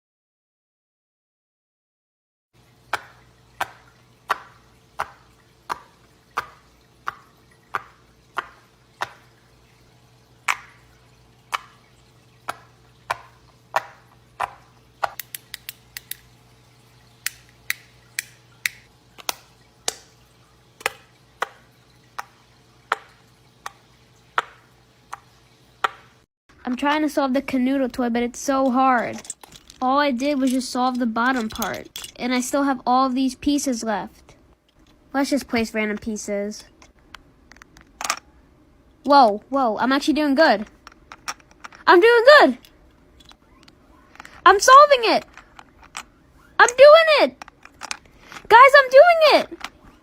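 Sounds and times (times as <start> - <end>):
faint steady hum: 2.6 - 50.0.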